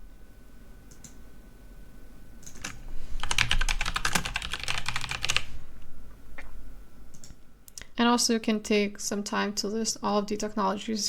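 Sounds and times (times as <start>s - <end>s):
keyboard typing: 2.4s - 5.5s.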